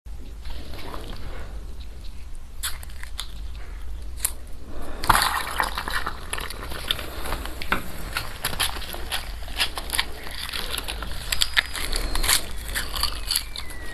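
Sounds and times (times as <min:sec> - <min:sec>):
ice crunching: 0:04.8 - 0:13.9.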